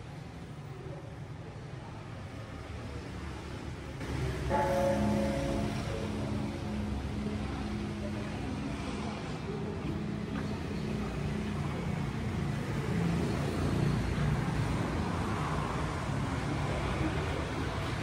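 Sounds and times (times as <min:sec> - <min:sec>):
road traffic rumble: 0:00.0 - 0:18.0
low hum of large bell: 0:04.4 - 0:07.9.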